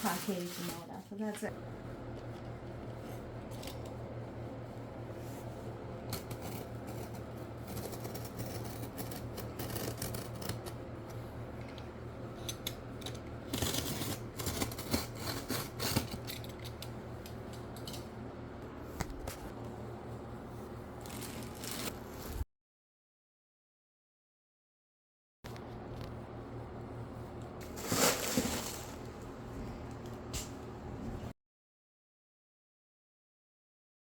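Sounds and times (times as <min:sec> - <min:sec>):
steady low hum: 0:01.0 - 0:22.4, 0:25.5 - 0:31.3
packaging rustling: 0:21.0 - 0:22.4, 0:27.6 - 0:29.1.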